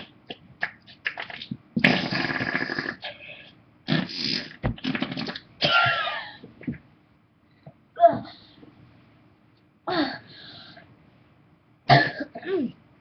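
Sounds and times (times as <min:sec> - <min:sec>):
fart noises: 0:01.8 - 0:03.2, 0:03.9 - 0:05.5.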